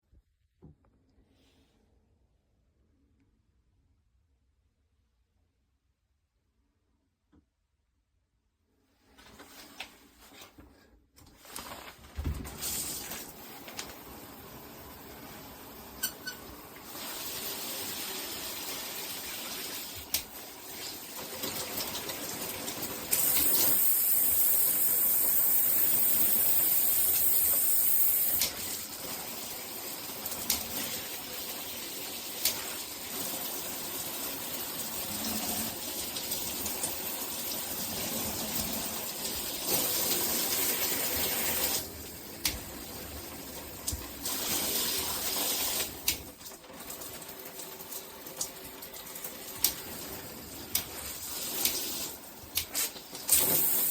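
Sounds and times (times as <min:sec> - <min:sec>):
shower head spraying water: 0:12.6 - 0:46.2, 0:47.2 - 0:53.9.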